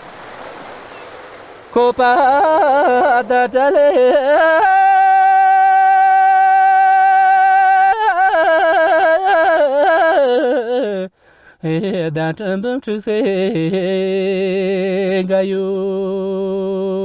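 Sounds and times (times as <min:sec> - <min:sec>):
person singing: 0:01.8 - 0:17.0.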